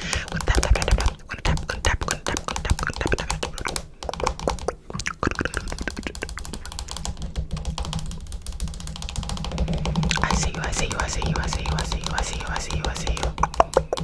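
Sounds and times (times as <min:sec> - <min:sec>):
low steady hum: 0:00.0 - 0:14.0
rapid irregular clicks and taps: 0:00.0 - 0:14.0.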